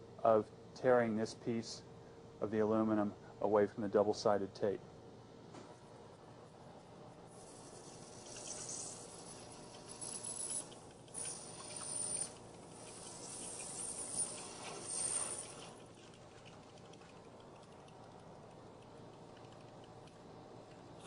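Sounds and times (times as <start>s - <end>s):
high squeals: 8.3s - 15.8s.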